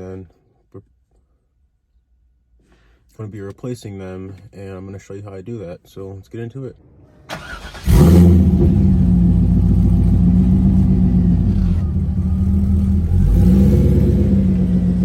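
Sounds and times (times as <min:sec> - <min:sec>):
car engine idling: 0:06.8 - 0:15.0.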